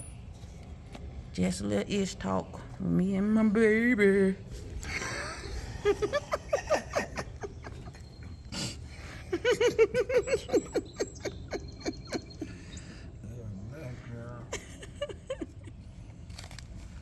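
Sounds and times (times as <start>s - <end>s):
person giggling: 4.8s - 13.0s, 14.4s - 15.8s.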